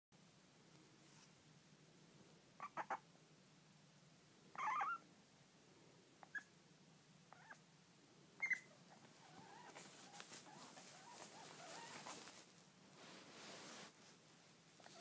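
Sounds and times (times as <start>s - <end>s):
pet whining: 2.6s - 3.0s, 4.5s - 5.0s, 7.3s - 7.6s, 8.4s - 12.4s, 14.8s - 15.0s.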